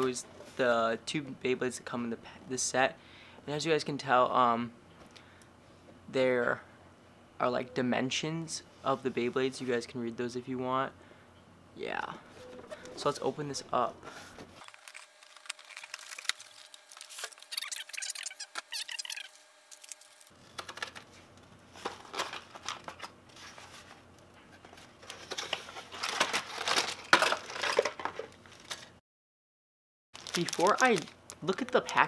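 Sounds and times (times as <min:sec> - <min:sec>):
plastic packaging crinkling: 0:14.6 - 0:24.0, 0:25.0 - 0:28.9, 0:30.2 - 0:32.0.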